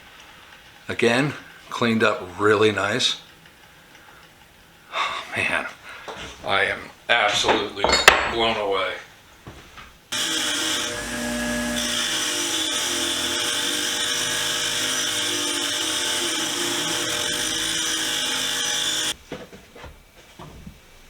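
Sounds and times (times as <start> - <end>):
wire wheel scrubbing rust: 10.2 - 19.2.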